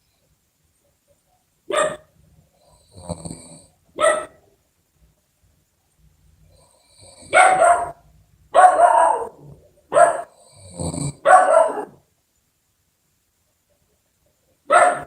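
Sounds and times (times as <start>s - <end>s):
short bark-like sounds: 1.3s - 2.2s, 4.0s - 4.6s, 7.2s - 10.4s, 11.1s - 12.1s, 14.7s - 15.0s.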